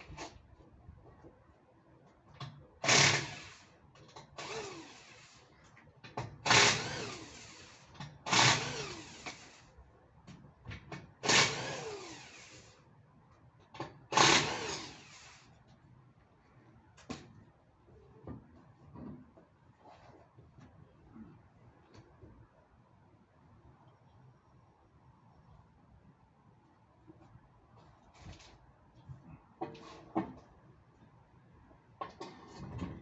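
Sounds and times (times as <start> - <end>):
impact wrench bursts: 2.8 - 3.7, 6.4 - 9.6, 11.2 - 12.7, 14.1 - 15.5.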